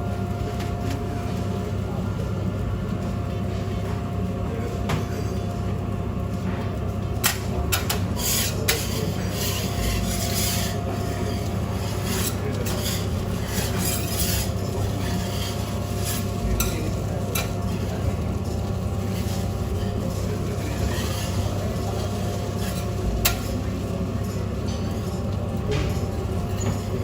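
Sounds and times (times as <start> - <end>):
steady low hum: 0.0 - 27.0
metal utensil scraping griddle: 7.2 - 25.1.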